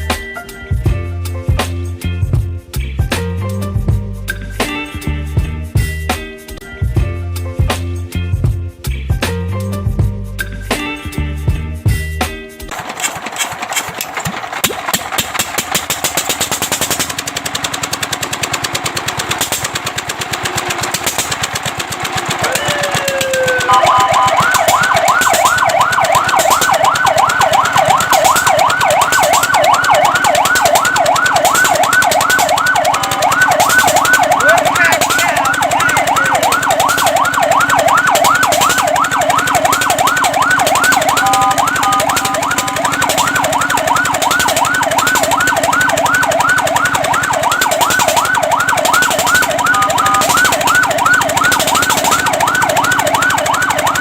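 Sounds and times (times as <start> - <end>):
engine knocking: 12.7 - 54.0
fire truck siren yelping: 12.7 - 54.0.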